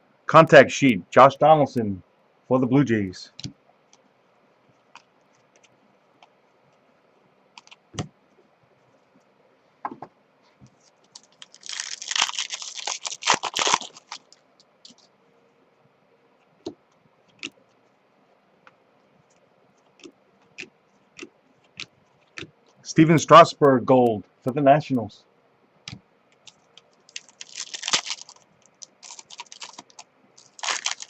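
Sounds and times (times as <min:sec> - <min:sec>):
wrappers rustling and crinkling: 0:10.7 - 0:15.1, 0:26.4 - 0:31.0.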